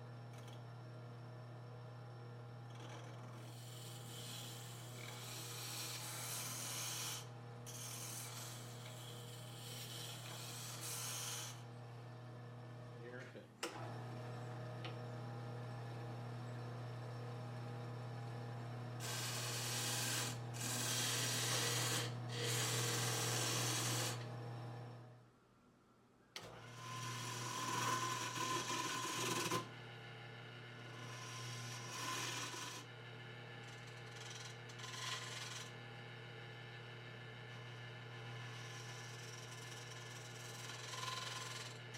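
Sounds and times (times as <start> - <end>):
wood lathe motor hum: 2.6 - 15.0, 18.2 - 25.1, 26.4 - 41.9
scraping on spinning wood: 2.7 - 11.5, 19.0 - 24.2, 26.8 - 29.7, 31.0 - 32.9, 33.8 - 35.8, 38.5 - 41.9.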